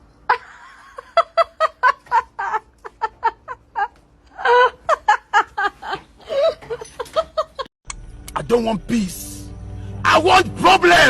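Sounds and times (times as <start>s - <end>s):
person laughing: 0.3s - 7.7s.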